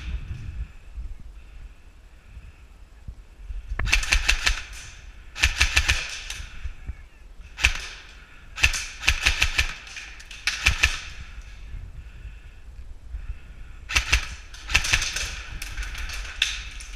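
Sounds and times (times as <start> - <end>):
airsoft guns firing bursts: 3.8 - 6.6, 7.5 - 11.4, 13.9 - 16.9.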